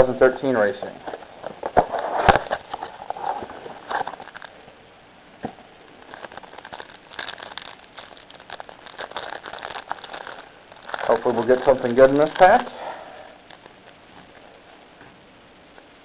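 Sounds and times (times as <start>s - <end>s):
cardboard packaging crackling: 1.2s - 4.6s, 5.9s - 14.6s.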